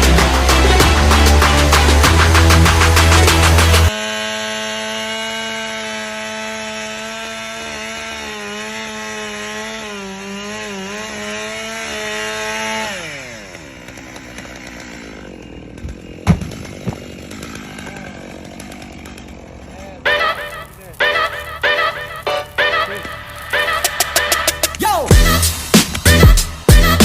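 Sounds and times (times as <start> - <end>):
chainsaw cutting wood: 0.0 - 27.0
sharp knocks: 15.8 - 17.2.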